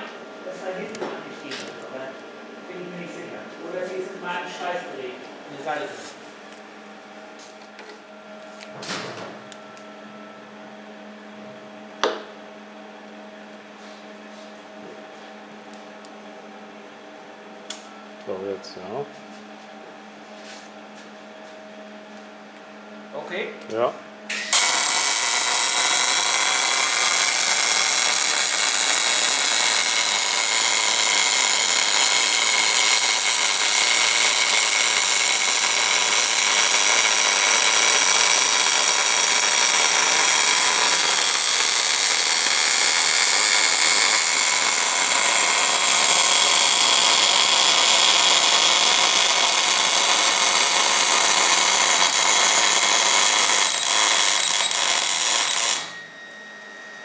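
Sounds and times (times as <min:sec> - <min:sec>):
welding arc hissing and crackling: 0:24.3 - 0:55.9.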